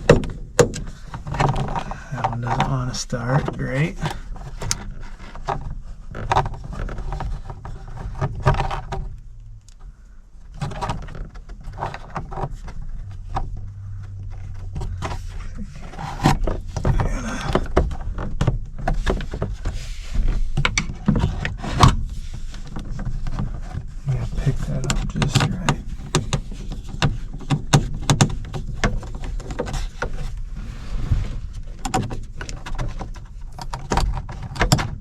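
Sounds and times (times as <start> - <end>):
low hum: 12.6 - 17.7, 25.3 - 27.0, 30.4 - 32.7.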